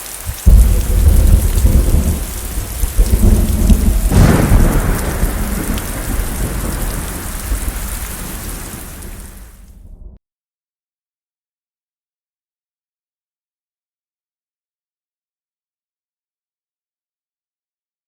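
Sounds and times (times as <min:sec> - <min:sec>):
steady rain: 0:00.0 - 0:10.0
rolling thunder: 0:00.3 - 0:10.2.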